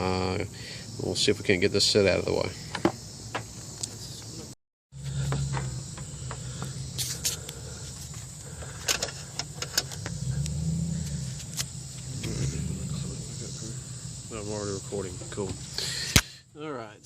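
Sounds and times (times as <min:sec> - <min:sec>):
steady low hum: 0:04.9 - 0:16.6
tools clicking on car parts: 0:08.7 - 0:10.6.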